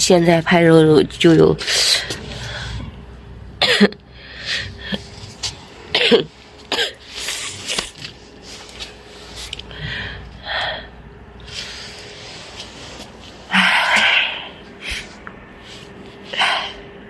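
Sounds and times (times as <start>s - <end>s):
person coughing: 3.6s - 4.0s, 5.9s - 7.1s.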